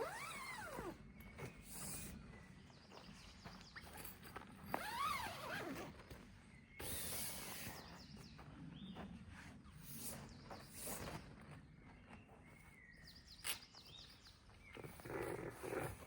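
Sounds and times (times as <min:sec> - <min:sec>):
hiss: 0:06.8 - 0:07.8.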